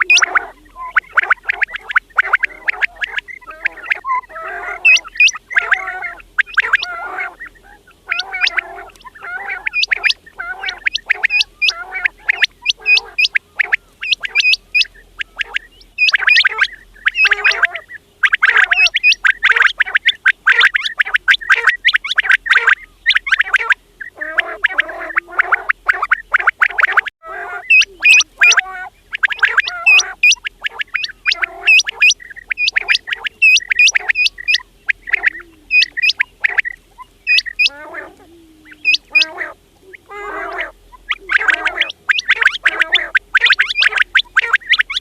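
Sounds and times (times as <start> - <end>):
quails chirping calls: 0.0 - 45.0.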